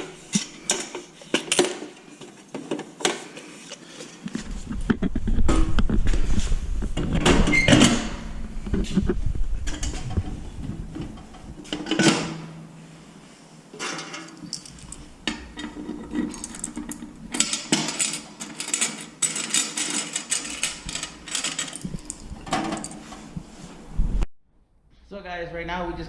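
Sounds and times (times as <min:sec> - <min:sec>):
coins clinking and rattling: 0:14.2 - 0:15.1, 0:16.2 - 0:23.0.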